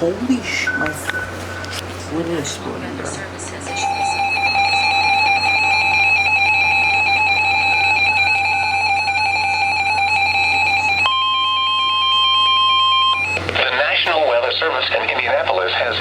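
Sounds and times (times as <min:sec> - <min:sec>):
steady electronic tones: 0:03.3 - 0:15.1
weather radio alarm tone: 0:03.6 - 0:16.0.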